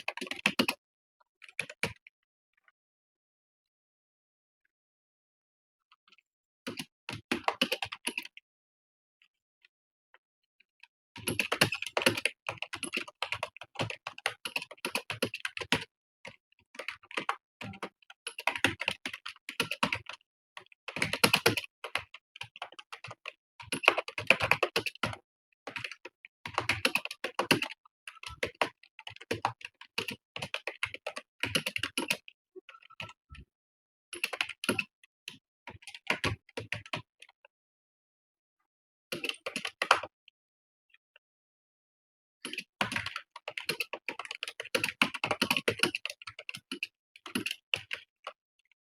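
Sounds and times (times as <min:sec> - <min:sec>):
fast typing on keyboard: 0:00.0 - 0:00.8, 0:06.7 - 0:08.3, 0:11.2 - 0:33.2, 0:34.1 - 0:37.1, 0:39.1 - 0:40.1, 0:42.4 - 0:48.4.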